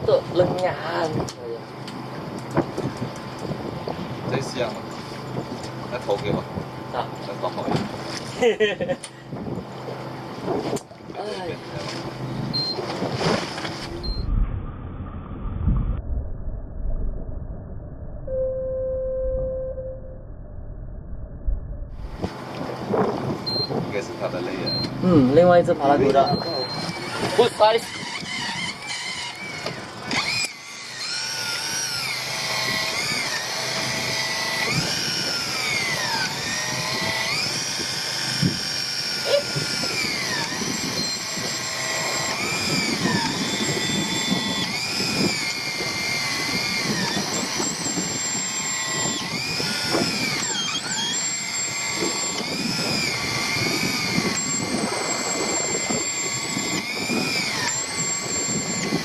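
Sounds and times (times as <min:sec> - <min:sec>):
electric fishing reel motor whine: 0:22.0 - 0:59.0.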